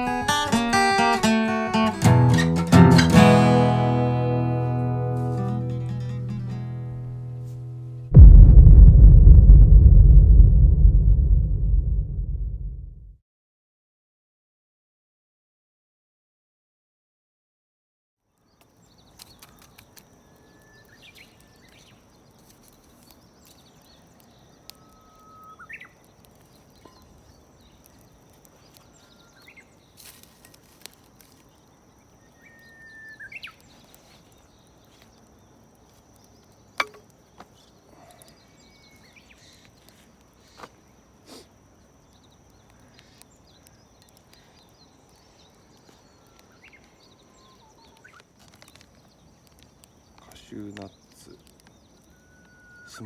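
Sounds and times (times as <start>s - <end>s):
bird whistled notes: 32.3s - 33.6s, 52.0s - 53.0s.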